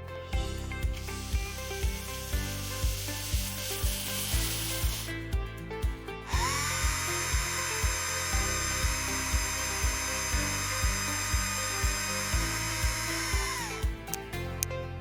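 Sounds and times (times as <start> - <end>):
upbeat background music: 0.0 - 15.0
hiss: 0.5 - 5.2, 6.3 - 13.8
small electric drill whining: 6.3 - 14.1.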